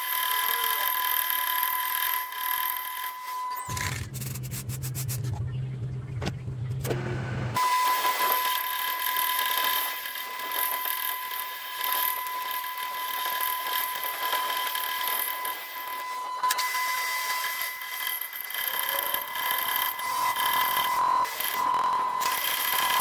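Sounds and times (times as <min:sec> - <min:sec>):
power tool whining: 0:06.7 - 0:23.0.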